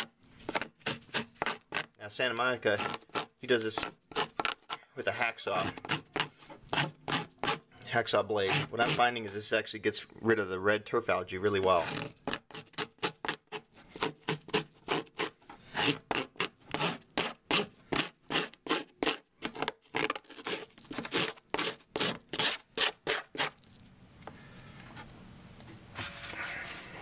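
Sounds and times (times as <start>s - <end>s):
plastic scraper scraping algae: 0.0s - 2.0s, 2.6s - 4.8s, 5.5s - 7.7s, 8.4s - 9.3s, 11.7s - 23.7s.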